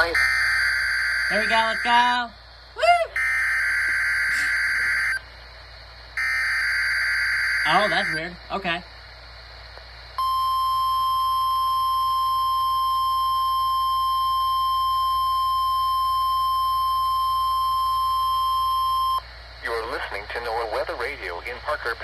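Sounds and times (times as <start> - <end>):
steady alarm tone: 0.0 - 2.4, 3.2 - 5.3, 6.2 - 8.4, 10.2 - 19.3.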